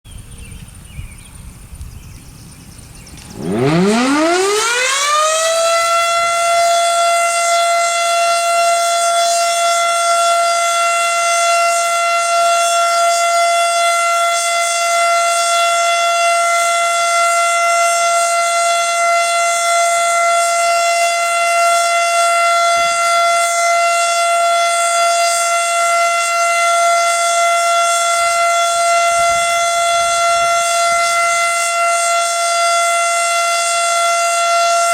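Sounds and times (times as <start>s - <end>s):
tornado siren wailing: 2.4s - 34.9s.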